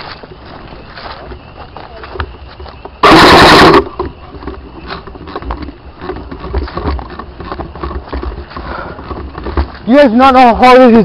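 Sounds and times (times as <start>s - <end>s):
airsoft gun full-auto burst: 3.0s - 3.9s.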